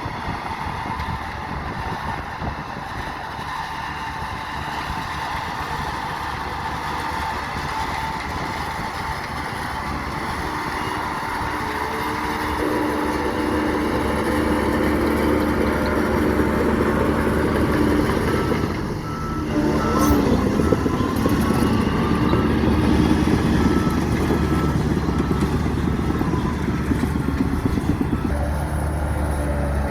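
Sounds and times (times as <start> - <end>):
model truck engines running: 0.0 - 29.9
reversing beeper beeps: 9.7 - 29.9.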